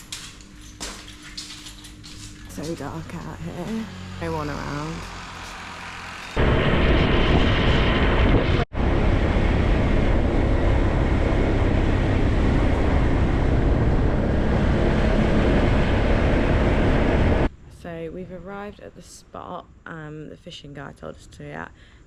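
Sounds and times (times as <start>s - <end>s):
vehicle running noise: 0.0s - 17.6s.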